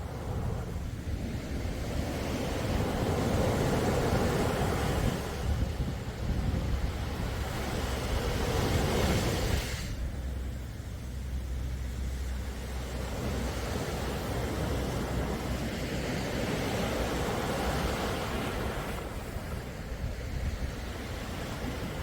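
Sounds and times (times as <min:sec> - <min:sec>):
steady low rumble: 0:00.0 - 0:17.4
sea waves washing ashore: 0:00.0 - 0:22.0.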